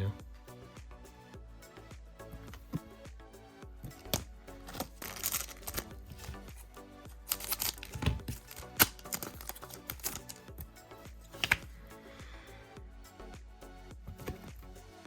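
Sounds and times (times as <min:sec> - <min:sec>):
background music: 0:00.0 - 0:15.0
cards rustling: 0:03.8 - 0:10.5, 0:11.3 - 0:11.7
wrapper crinkling: 0:04.7 - 0:06.5, 0:07.3 - 0:10.4.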